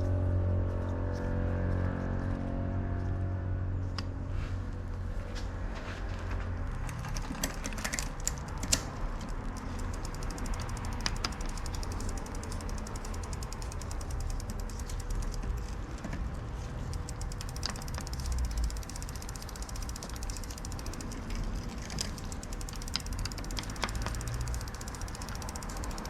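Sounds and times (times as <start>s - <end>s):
sharp clicks: 6.9s - 26.0s
bicycle freewheel ticking: 7.1s - 26.0s.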